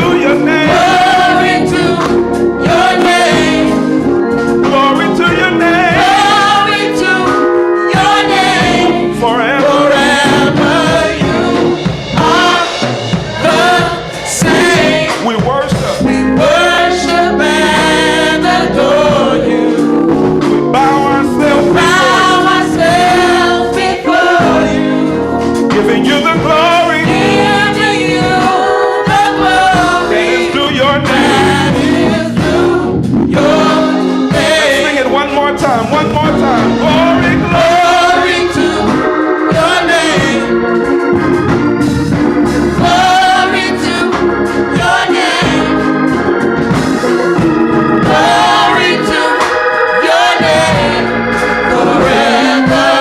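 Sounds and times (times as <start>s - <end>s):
voices singing gospel song: 0.0s - 53.0s
instruments holding sustained chords: 45.6s - 53.0s.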